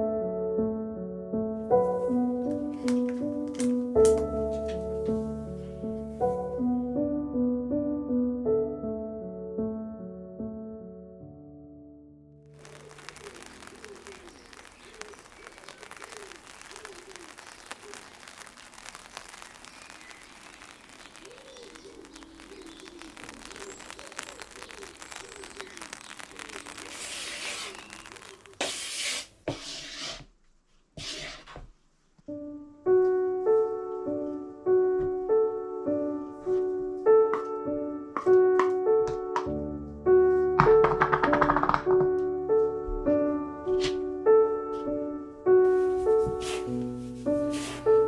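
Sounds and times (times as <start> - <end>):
soft piano music: 0.0 - 12.5, 32.3 - 48.0
rain hissing: 12.5 - 29.4, 45.7 - 48.0.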